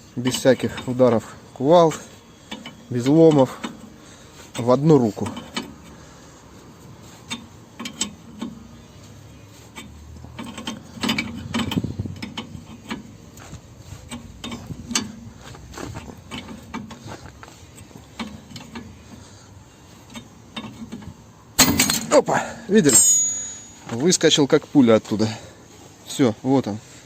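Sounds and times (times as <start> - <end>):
wrench metallic clicks: 2.5 - 3.9, 7.2 - 8.6, 9.7 - 13.2, 14.0 - 15.3, 20.0 - 22.2, 22.8 - 24.0.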